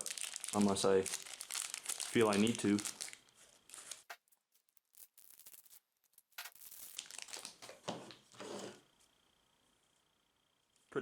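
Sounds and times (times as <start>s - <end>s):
plastic packaging crinkling: 0.0s - 8.4s.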